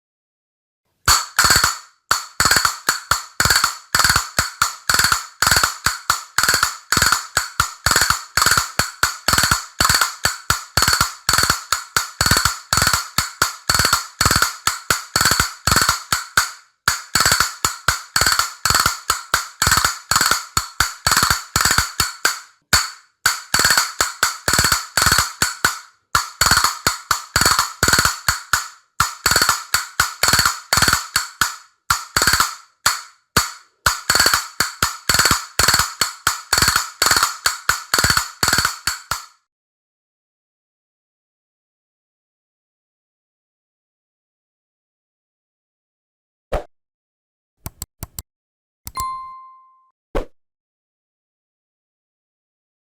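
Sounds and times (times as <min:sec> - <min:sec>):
castanets clicking: 0:01.1 - 0:39.3.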